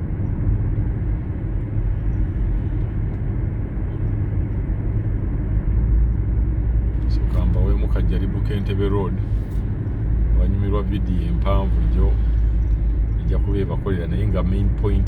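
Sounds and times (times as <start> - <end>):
vehicle engine and road noise: 0.0 - 15.0.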